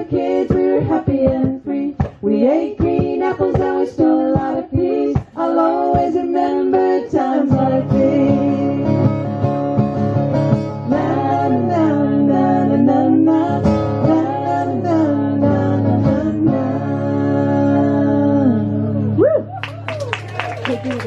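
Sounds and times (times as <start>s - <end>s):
women singing: 0.0s - 19.2s
strummed acoustic guitar: 7.4s - 18.0s.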